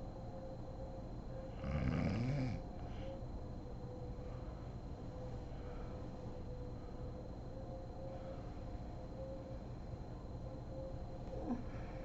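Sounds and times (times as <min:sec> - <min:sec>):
faint steady tone: 0:00.0 - 0:12.0
low background hum and hiss: 0:00.0 - 0:12.0.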